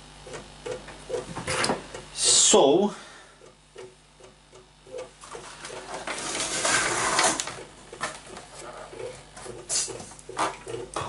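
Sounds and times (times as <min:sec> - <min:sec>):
rustling scrape: 0:05.2 - 0:07.5.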